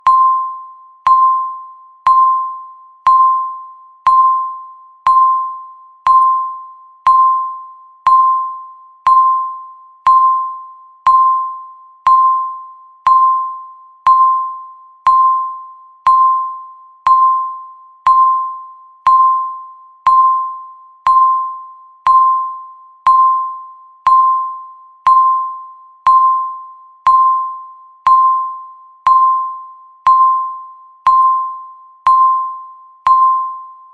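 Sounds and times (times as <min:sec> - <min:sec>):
timer ticking: 0:01.0 - 0:07.5, 0:08.1 - 0:24.5, 0:27.1 - 0:33.6.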